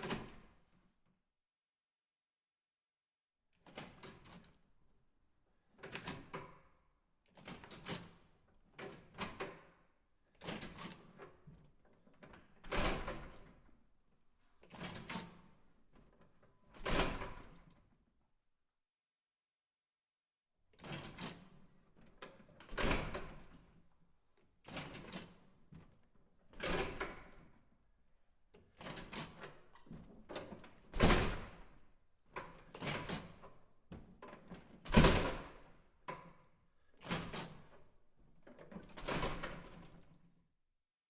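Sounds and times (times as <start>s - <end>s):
push-bar latch clack: 34.2s - 37.8s.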